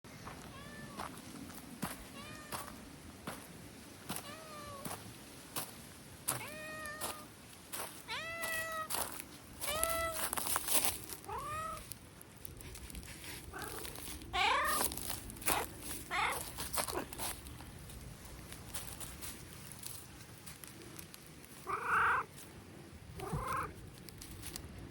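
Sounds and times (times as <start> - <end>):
cat meowing: 0.5 - 1.0, 2.2 - 2.7, 4.2 - 4.9, 6.3 - 7.3, 8.1 - 9.0, 9.6 - 10.3, 11.2 - 11.9, 13.5 - 14.9, 15.5 - 17.2, 21.6 - 22.3, 23.2 - 23.8
light clicks and rustles: 8.5 - 21.7, 23.2 - 24.9.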